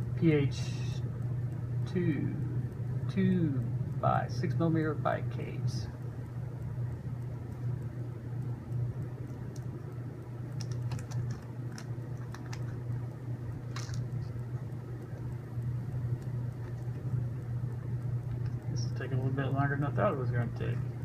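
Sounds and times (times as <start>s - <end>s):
low hum: 0.0s - 21.0s
small parts clicking and rattling: 10.6s - 12.8s, 13.7s - 14.3s.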